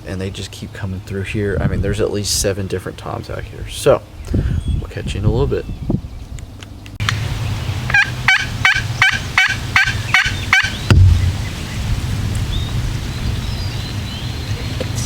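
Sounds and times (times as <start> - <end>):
turkey gobbling: 7.8 - 11.8
low thump: 10.9 - 11.6.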